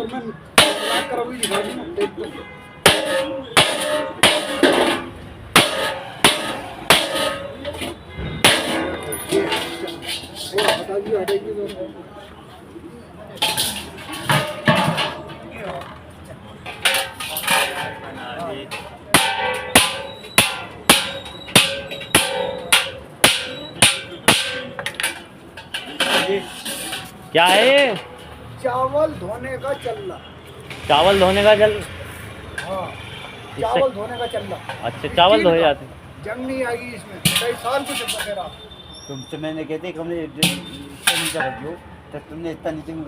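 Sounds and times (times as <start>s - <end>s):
hammer striking iron on anvil: 2.9s - 7.6s, 8.4s - 9.0s, 19.2s - 25.0s.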